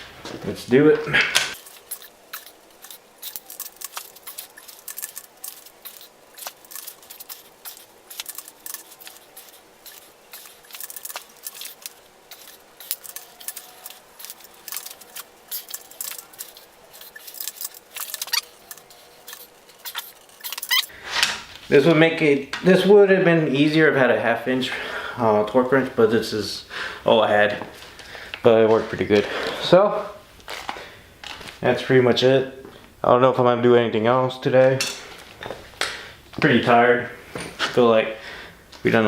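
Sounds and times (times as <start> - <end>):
torque wrench ratcheting: 1.6 - 20.9.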